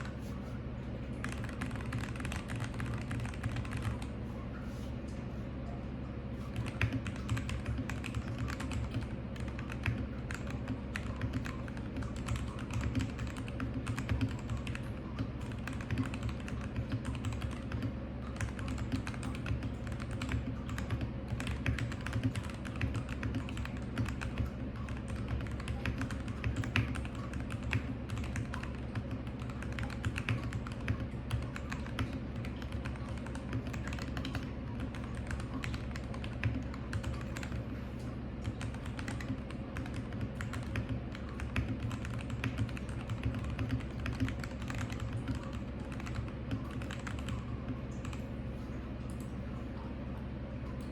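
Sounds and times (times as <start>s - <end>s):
steady low hum: 0.0s - 50.9s
mechanical keyboard typing: 1.2s - 4.1s, 6.5s - 37.6s, 38.4s - 48.2s.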